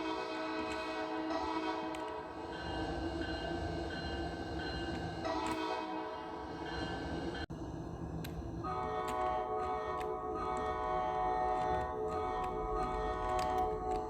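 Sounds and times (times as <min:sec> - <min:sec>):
train air horn chord: 0:00.0 - 0:02.4, 0:05.3 - 0:06.6, 0:08.6 - 0:13.9.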